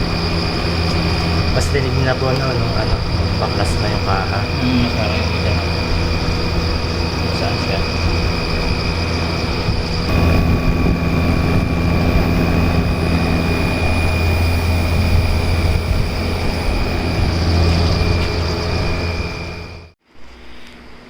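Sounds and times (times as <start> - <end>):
air conditioner hum: 0.0 - 21.0
shrill fan bearing whine: 0.0 - 21.0.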